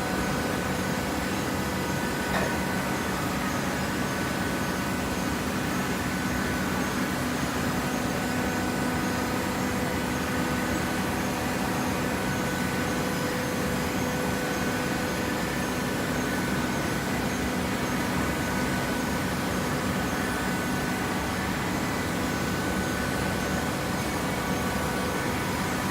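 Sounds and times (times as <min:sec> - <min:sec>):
baling machine humming: 0:00.0 - 0:25.9.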